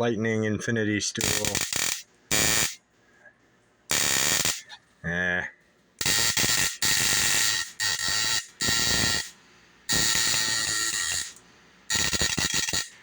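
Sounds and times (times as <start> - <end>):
electric sparks crackling and buzzing: 1.2 - 2.8, 3.9 - 4.8, 6.0 - 13.0.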